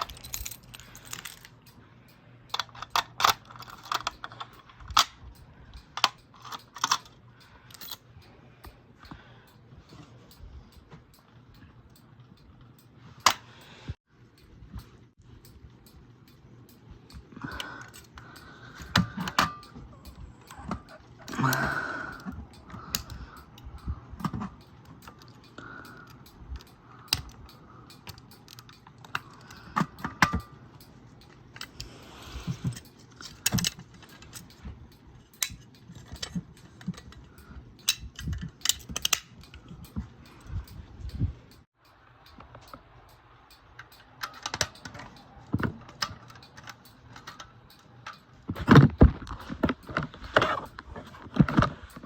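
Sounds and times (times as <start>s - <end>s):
handles rattling: 0.0s - 1.8s, 2.4s - 13.6s, 14.4s - 41.6s, 43.6s - 52.0s
fire alarm pull station handles clicking: 2.5s - 8.0s, 24.2s - 30.6s, 37.8s - 40.0s, 43.7s - 52.0s.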